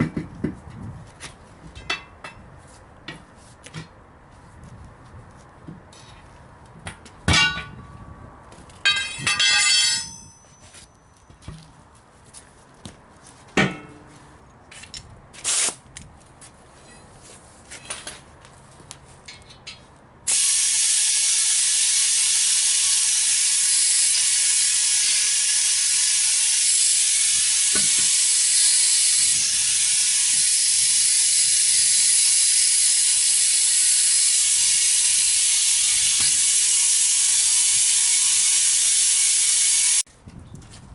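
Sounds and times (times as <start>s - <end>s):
metal tools clanking: 8.8s - 11.3s, 16.8s - 18.2s
compressed air hissing: 15.4s - 15.8s, 20.3s - 40.0s.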